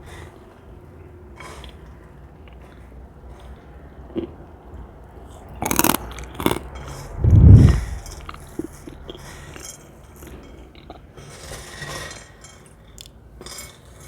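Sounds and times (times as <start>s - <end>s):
faint chewing clicks: 5.6s - 6.8s.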